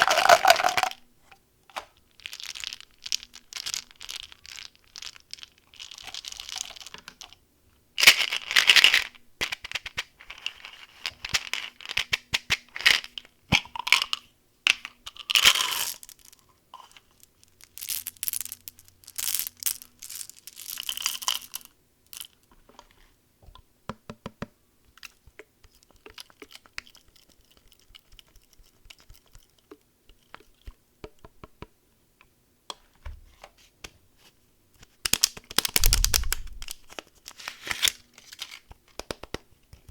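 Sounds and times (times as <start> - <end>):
small clicks and rustles of handling: 15.9 - 23.6, 24.8 - 39.9
plastic wrappers tearing and crinkling: 35.2 - 38.6.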